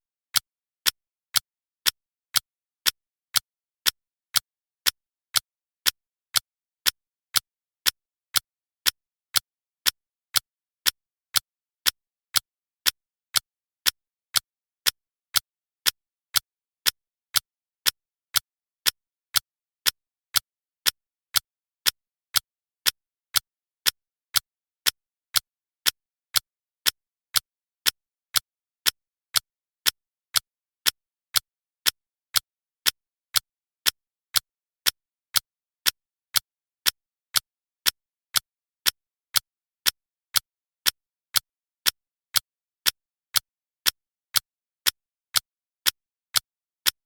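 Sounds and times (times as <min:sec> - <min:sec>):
clock-like ticking: 0:22.8 - 0:47.0.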